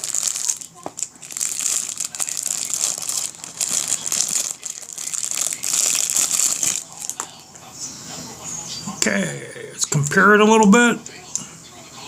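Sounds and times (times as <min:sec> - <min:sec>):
packaging crinkling: 0:00.0 - 0:07.4.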